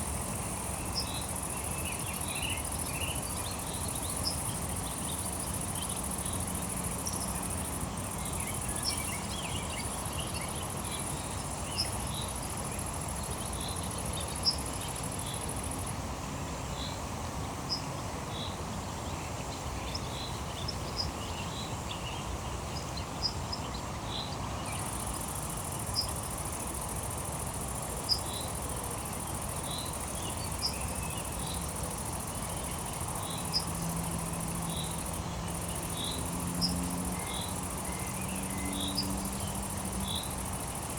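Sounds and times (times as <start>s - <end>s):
insects trilling high-pitched: 0.0s - 16.0s, 24.7s - 40.9s
low steady background wash: 0.0s - 40.9s.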